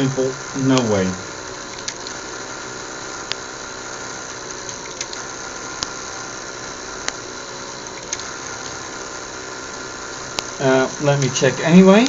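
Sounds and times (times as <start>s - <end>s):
small electric motors whirring: 0.0s - 12.0s
sharp clicks: 0.7s - 0.9s, 1.7s - 2.2s, 4.2s - 6.0s, 7.8s - 8.8s.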